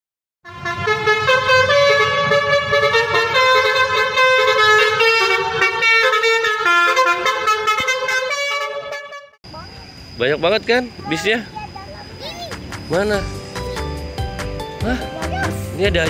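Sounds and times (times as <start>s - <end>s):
bus air horns playing a tune: 0.4s - 9.4s.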